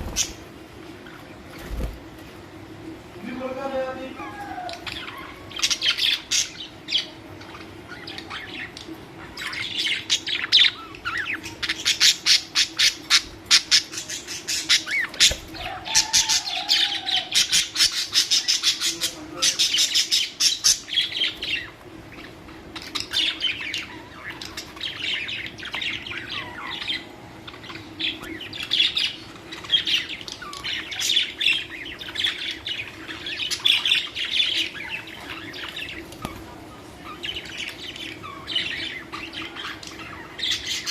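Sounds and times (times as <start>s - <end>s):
budgerigars chattering and chirping: 0.0s - 1.9s, 3.4s - 40.9s
steady low hum: 0.0s - 40.9s.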